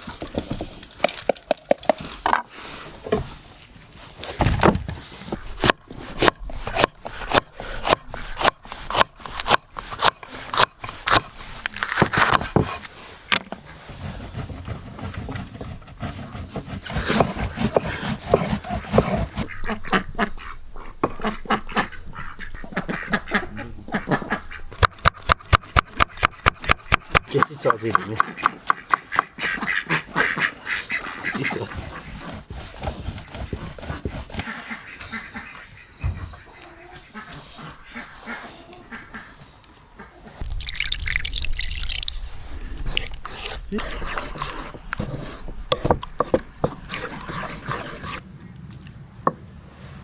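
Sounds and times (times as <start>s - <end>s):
knife chopping on wooden board: 16.1s - 19.5s.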